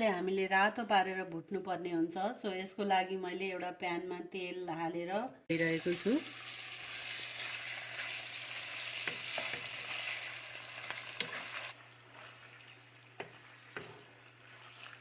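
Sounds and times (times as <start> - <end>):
chicken sizzling in oil: 5.5 - 15.0.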